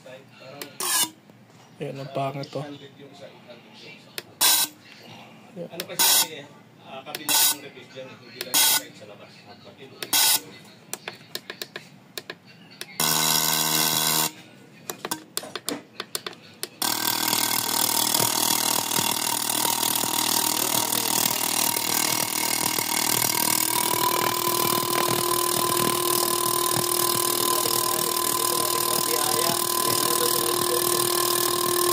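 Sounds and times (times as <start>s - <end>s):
machine running: 13.0s - 14.4s, 16.7s - 31.9s
scattered clicks: 14.9s - 31.9s.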